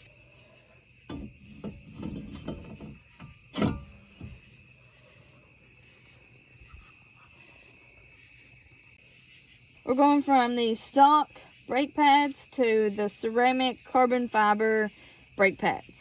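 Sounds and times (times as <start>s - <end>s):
crickets chirping: 0.0s - 16.0s
brake parts and tools knocking: 0.7s - 5.0s.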